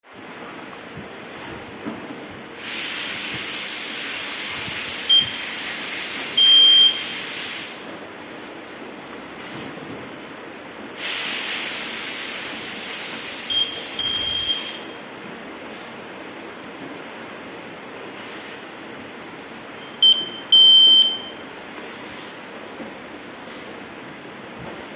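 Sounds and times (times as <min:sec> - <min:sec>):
smoke alarm beeps: 0:05.1 - 0:05.5, 0:06.4 - 0:07.3, 0:13.5 - 0:15.0, 0:19.8 - 0:21.5.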